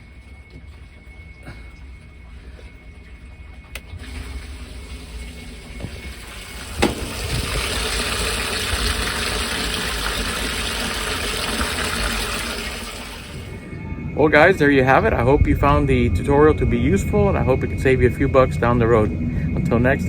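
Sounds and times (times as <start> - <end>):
pump spraying water: 0.0 - 13.6
low rumble: 0.0 - 20.0.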